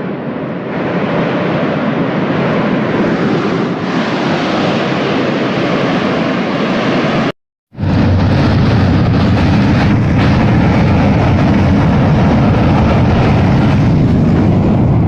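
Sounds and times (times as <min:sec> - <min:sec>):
volcanic gas venting roar: 0:00.0 - 0:15.0.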